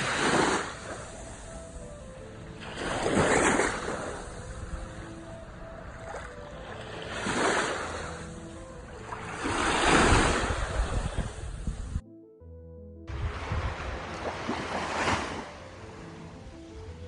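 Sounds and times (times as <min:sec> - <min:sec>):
sea waves washing onto shore: 0:00.0 - 0:02.0, 0:13.3 - 0:15.6.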